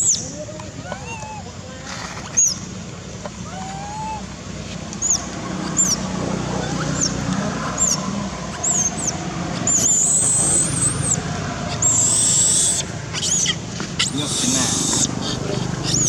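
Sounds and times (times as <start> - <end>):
high-pitched animal chirps: 7.8 - 16.0
warbling high calls: 8.5 - 16.0.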